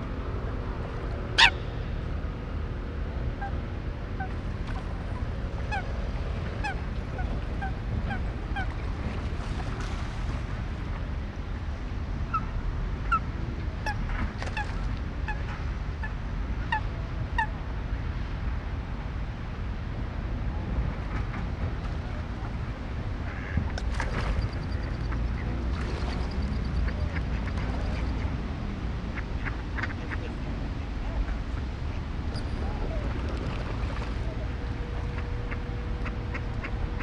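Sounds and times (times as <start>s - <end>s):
low background rumble: 0.0s - 37.0s
geese calling: 1.4s - 1.9s, 6.6s - 8.7s.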